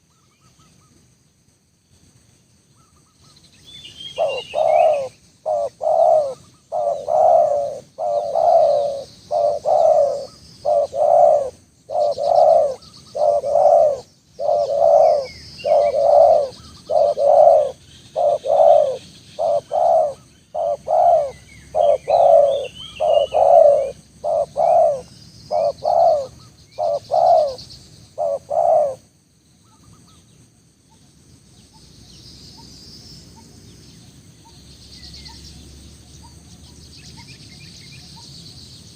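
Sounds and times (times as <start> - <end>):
faint small bird chirps: 0.0 - 1.1, 2.6 - 38.9
dove cooing: 4.1 - 29.1.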